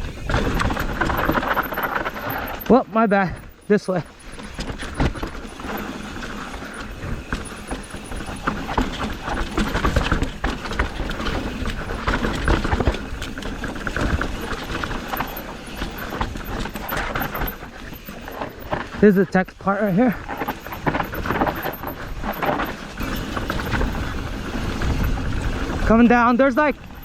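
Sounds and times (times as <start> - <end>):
bike chain and frame rattling: 0.0 - 27.0
bike tyres crunching over rocks: 0.0 - 27.0.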